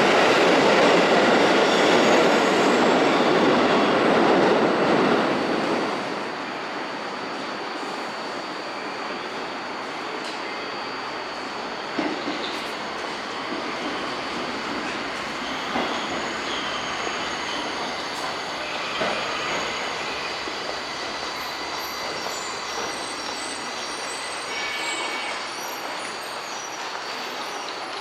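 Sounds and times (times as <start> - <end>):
subway train rumbling: 0.0 - 28.0
high wheel squeal: 7.4 - 28.0.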